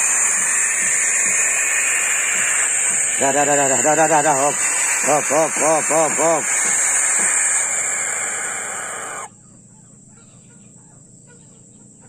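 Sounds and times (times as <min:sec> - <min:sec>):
owl hissing: 0:00.0 - 0:09.3
faint chirps and clucks: 0:00.0 - 0:12.0.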